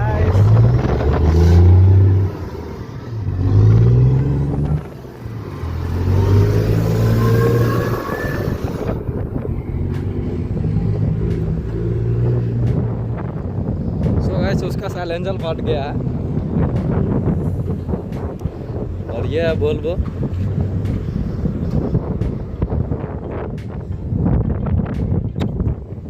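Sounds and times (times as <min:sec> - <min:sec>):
loud truck engine running: 0:00.0 - 0:24.2.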